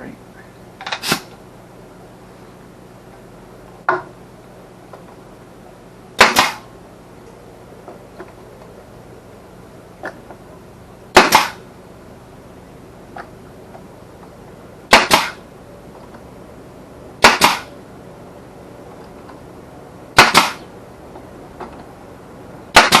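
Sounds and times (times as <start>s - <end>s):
pneumatic nailer firing: 0.8s - 1.4s, 6.2s - 6.7s, 11.1s - 11.7s, 14.9s - 15.4s, 17.2s - 17.8s, 20.2s - 20.7s, 22.7s - 23.0s
hiss of exhaust air: 0.9s - 1.4s.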